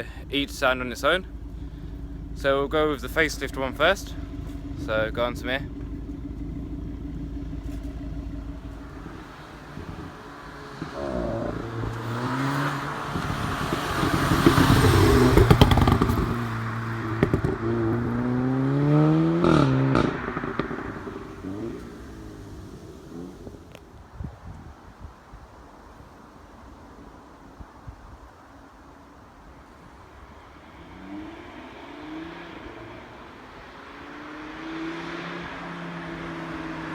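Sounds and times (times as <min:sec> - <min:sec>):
car engine accelerating hard: 0:00.0 - 0:24.0, 0:29.4 - 0:36.9
exhaust cracks: 0:00.0 - 0:26.8.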